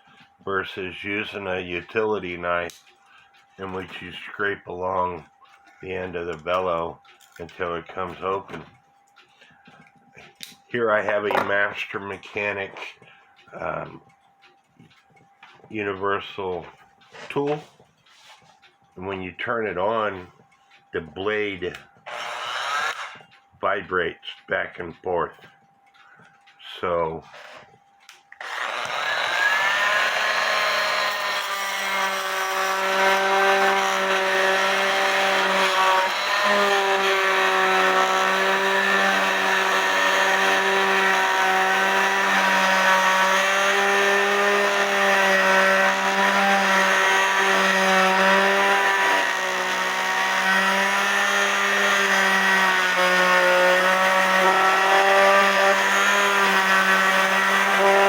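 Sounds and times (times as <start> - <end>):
oscillating multi-tool running: 22.1 - 23.2, 28.4 - 58.0.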